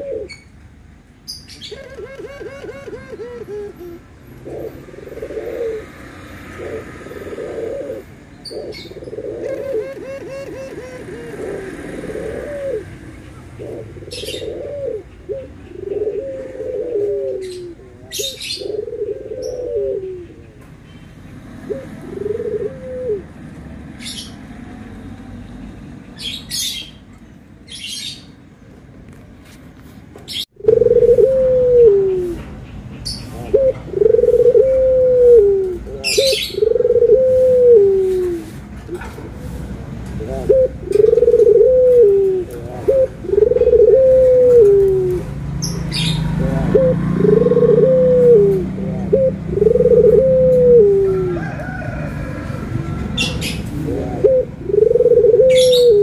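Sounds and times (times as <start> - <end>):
dove cooing: 0.0 - 0.5, 1.4 - 20.6, 21.6 - 23.4, 30.3 - 32.5, 33.4 - 39.6, 40.2 - 56.0
small birds chirping: 0.2 - 5.8, 8.3 - 21.4, 32.0 - 34.4, 35.8 - 37.0, 44.6 - 50.0.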